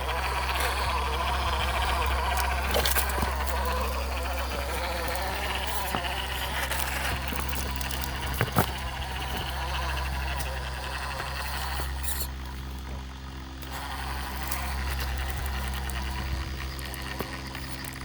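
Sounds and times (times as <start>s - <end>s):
toy car motor whining: 0.0s - 18.0s
tyres knocking on rock: 0.4s - 10.2s.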